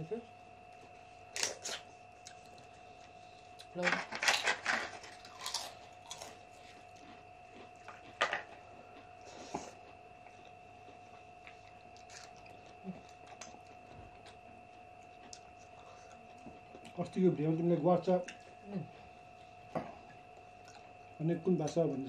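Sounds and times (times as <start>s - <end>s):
faint steady whine: 0.0s - 22.0s
person chewing food: 1.4s - 3.7s, 5.2s - 17.0s, 18.2s - 21.2s.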